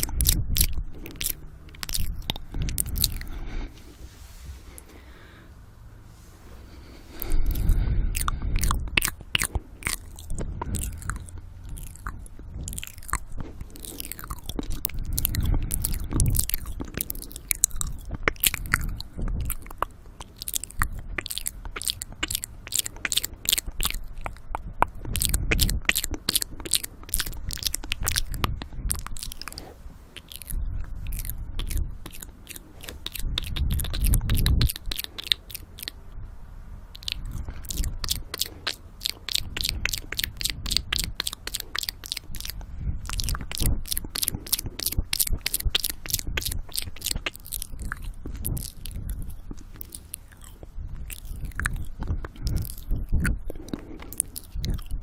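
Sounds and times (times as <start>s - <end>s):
mouth clicks and smacks: 0.0s - 3.9s, 6.6s - 36.2s, 36.9s - 55.0s
heavy breathing into microphone: 2.4s - 9.0s, 42.6s - 43.3s, 52.1s - 54.8s.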